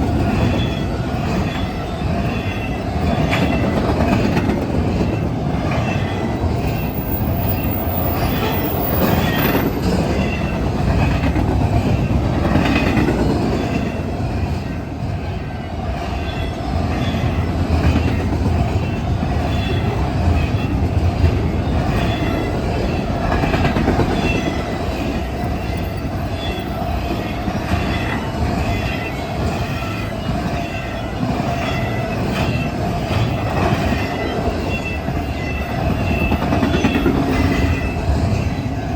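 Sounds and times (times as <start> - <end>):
freight train wheels roaring: 0.0 - 38.9.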